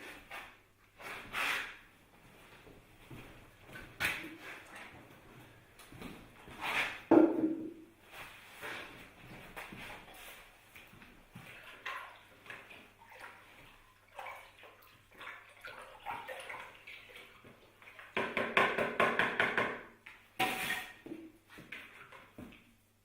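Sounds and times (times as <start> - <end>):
water pouring and splashing: 10.1 - 18.2.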